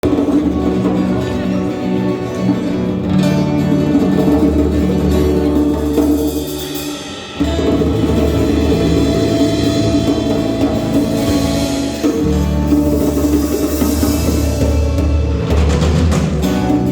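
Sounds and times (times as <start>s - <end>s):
light percussion: 0.0s - 16.9s
plucked guitar: 0.0s - 16.9s.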